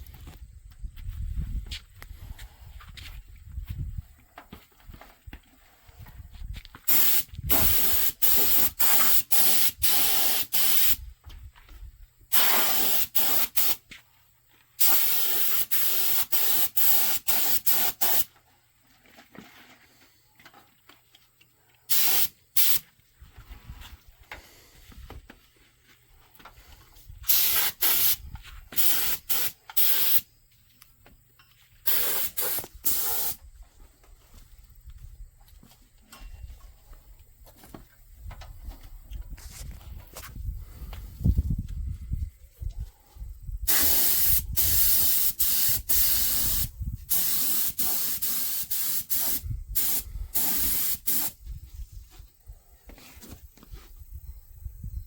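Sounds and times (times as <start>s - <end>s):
aerosol spray can hissing: 6.9s - 11.0s, 12.3s - 13.8s, 14.8s - 18.3s, 21.9s - 22.8s, 27.3s - 28.2s, 28.8s - 30.2s, 31.9s - 33.4s, 43.7s - 51.4s.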